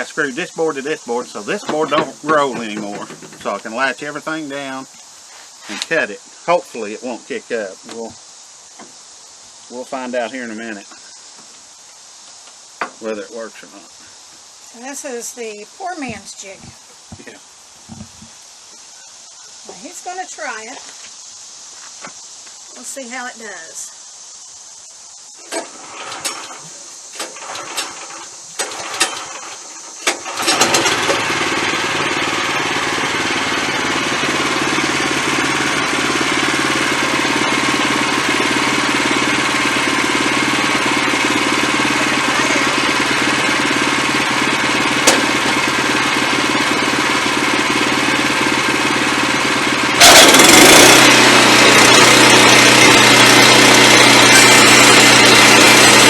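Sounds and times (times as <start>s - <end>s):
sawmill engine running: 0.0s - 5.0s, 25.6s - 56.0s.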